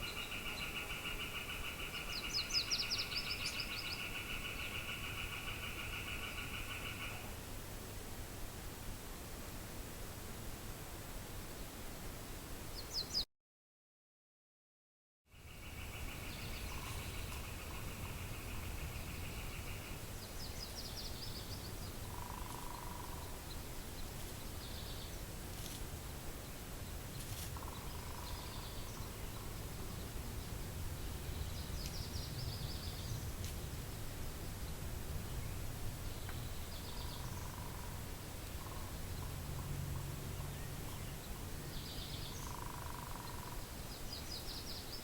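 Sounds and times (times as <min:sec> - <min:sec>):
low wind rumble: 0:15.4 - 0:45.0.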